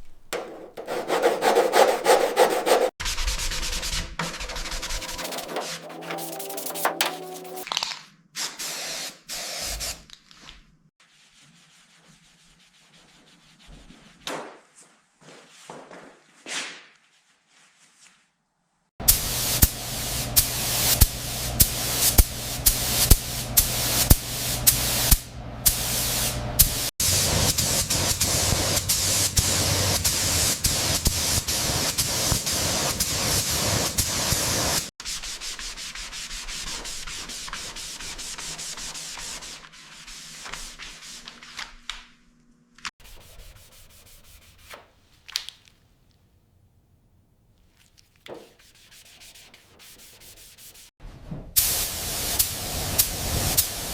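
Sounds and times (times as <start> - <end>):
abrasive sanding rubbing: 0.3 - 7.6, 48.5 - 50.9.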